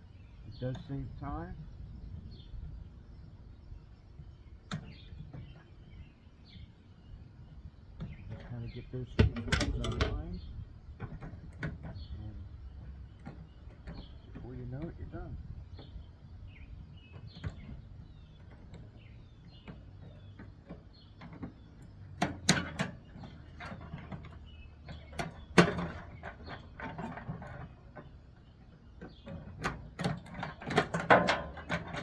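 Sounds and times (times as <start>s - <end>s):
hand tools knocking on metal and plastic: 8.0s - 10.4s, 29.0s - 32.0s.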